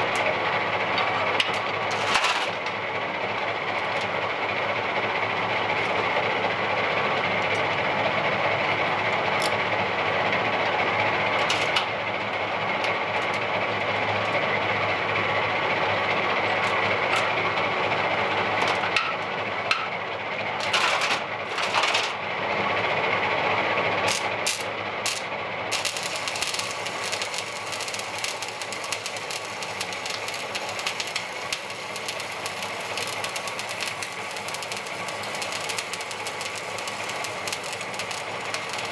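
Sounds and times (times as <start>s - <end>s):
welder arc crackling and hissing: 0.0s - 19.8s, 20.6s - 22.2s, 24.0s - 38.9s
sharp welding pops: 24.1s - 38.9s.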